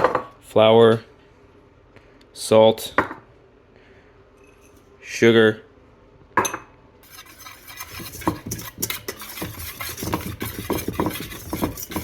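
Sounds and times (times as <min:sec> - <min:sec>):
stirring dry ingredients in bowl: 0:07.0 - 0:12.0.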